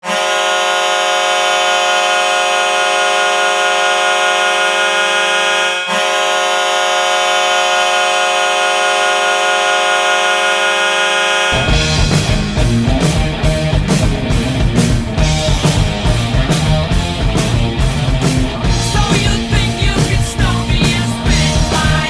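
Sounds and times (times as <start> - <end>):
goal horn blowing: 0.0 - 12.4.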